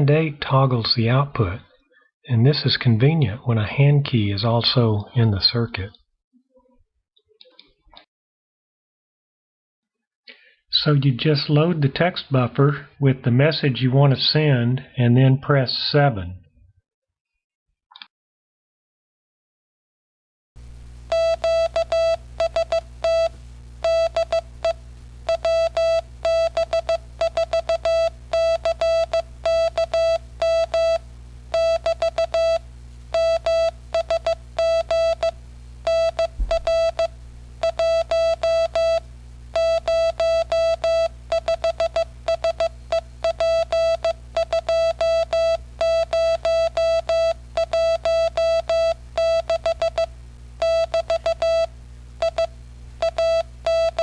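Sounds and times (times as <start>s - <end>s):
steady low hum: 20.6s - 54.0s
morse code tone: 21.1s - 54.0s.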